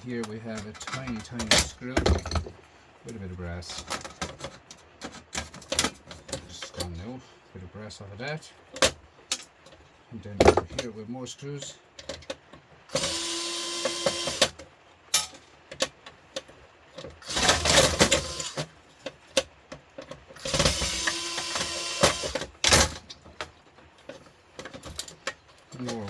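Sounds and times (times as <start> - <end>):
cordless drill running: 12.9 - 14.5, 17.2 - 18.6, 20.4 - 22.5.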